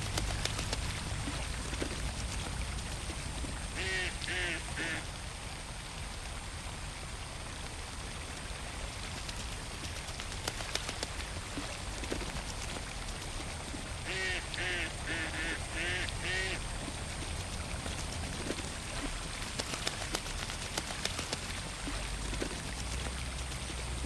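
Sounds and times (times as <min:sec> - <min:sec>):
pond water pattering: 0:00.0 - 0:24.0
duck quacking: 0:03.8 - 0:05.0, 0:14.1 - 0:16.6.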